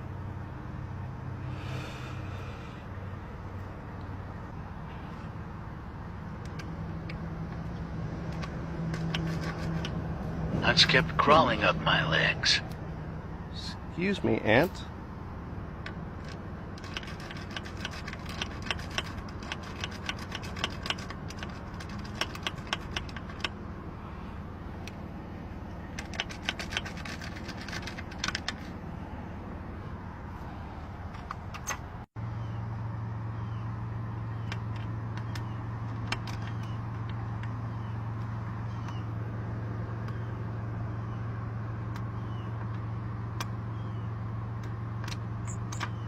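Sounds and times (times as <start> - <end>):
vehicle engine idling: 0.0 - 46.0
metallic clicks and rattles: 6.4 - 10.0, 15.8 - 23.6, 25.9 - 28.8, 34.3 - 39.0.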